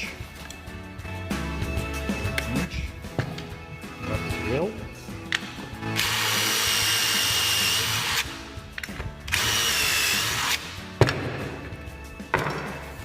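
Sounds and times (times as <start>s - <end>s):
power drill boring into wood: 6.0s - 8.3s, 9.3s - 10.6s.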